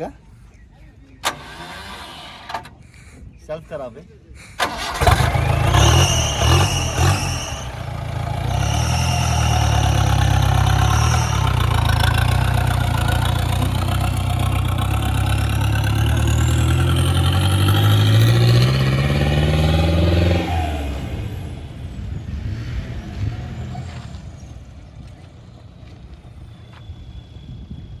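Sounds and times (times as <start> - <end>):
diesel engine revving loudly: 4.6 - 24.6
faint high whine: 25.5 - 28.0.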